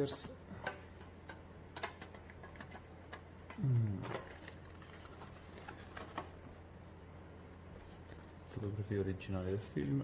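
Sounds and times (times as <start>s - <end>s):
paper and packaging rustling: 4.0s - 10.0s.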